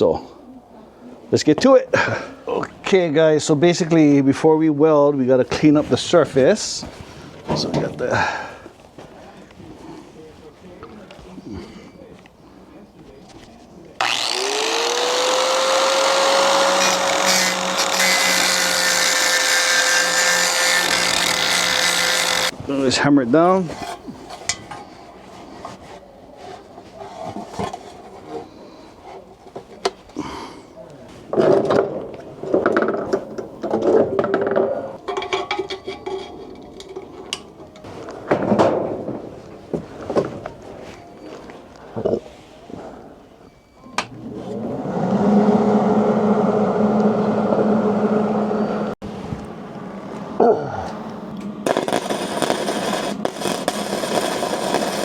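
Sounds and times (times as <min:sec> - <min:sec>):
power tool motor running: 0:14.0 - 0:22.6, 0:51.7 - 0:55.0
tools knocking and clattering: 0:31.4 - 0:37.5.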